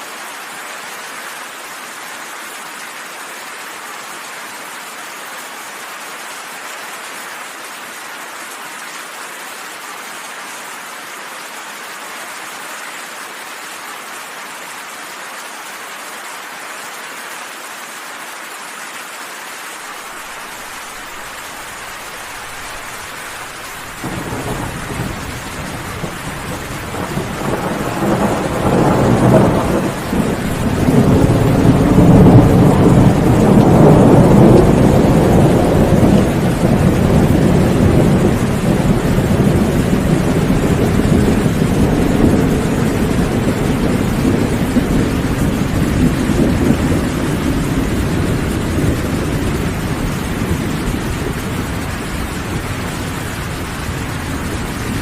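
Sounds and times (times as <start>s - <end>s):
steady rain: 0.0s - 55.0s
low rumble of thunder: 22.2s - 55.0s.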